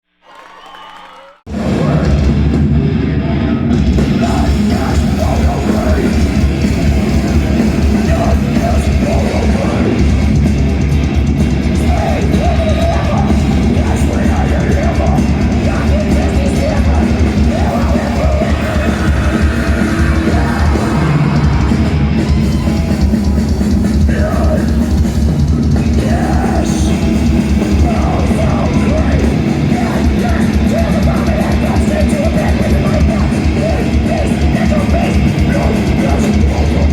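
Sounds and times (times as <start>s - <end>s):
drum kit: 0.7s - 36.9s
distorted guitars: 1.5s - 36.9s
person yelling vocals: 17.5s - 23.0s.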